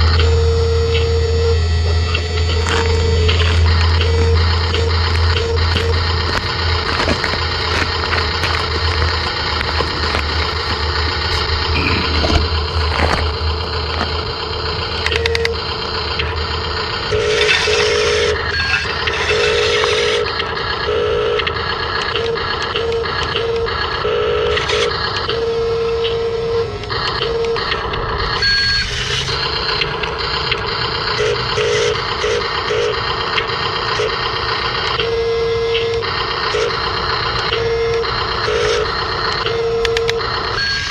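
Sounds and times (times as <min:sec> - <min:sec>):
electronic beeper: 0:00.0 - 0:06.8, 0:27.2 - 0:30.4
small electric motors whirring: 0:00.8 - 0:20.8.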